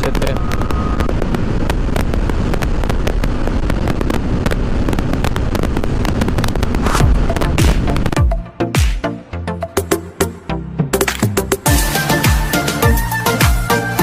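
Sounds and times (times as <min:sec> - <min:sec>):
motorcycle wind and engine rush: 0:00.0 - 0:08.2
wind buffeting microphone: 0:00.0 - 0:08.2.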